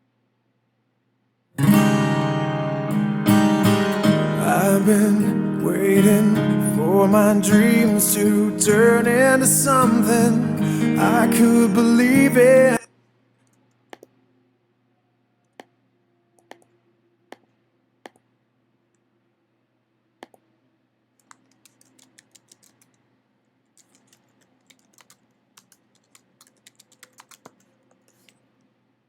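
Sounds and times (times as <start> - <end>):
computer keyboard typing: 21.2 - 23.0, 23.8 - 28.4.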